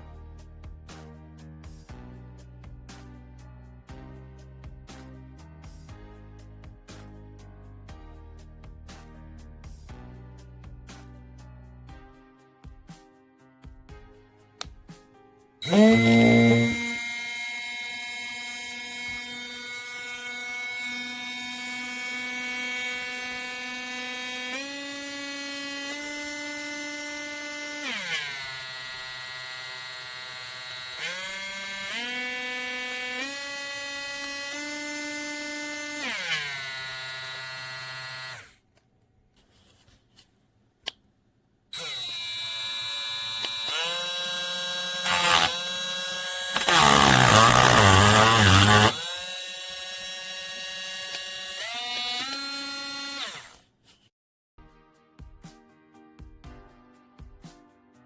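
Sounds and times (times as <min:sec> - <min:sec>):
rotary tool motor whining: 0:15.6 - 0:38.6, 0:41.8 - 0:53.6.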